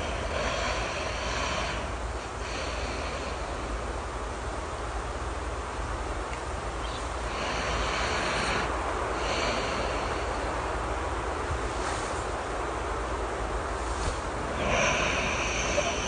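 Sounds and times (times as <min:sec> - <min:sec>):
person snoring softly: 0:00.0 - 0:03.7, 0:07.3 - 0:10.6, 0:13.8 - 0:16.0
steady rain: 0:00.0 - 0:16.0.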